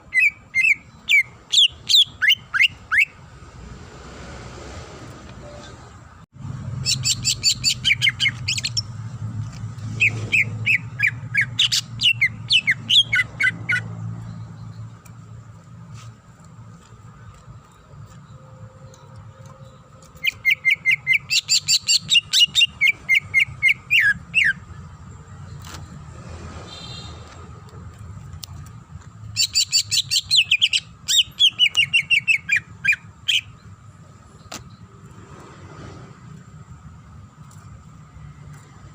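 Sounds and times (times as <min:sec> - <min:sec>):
bird singing fast varied song: 0:00.0 - 0:03.2, 0:06.7 - 0:09.0, 0:09.9 - 0:15.7, 0:17.6 - 0:26.0, 0:29.2 - 0:35.0.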